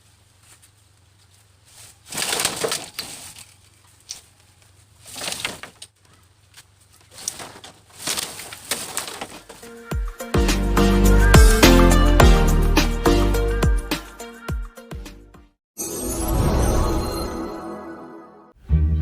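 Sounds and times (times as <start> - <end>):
bamboo crackling and splitting: 0.0 - 9.7.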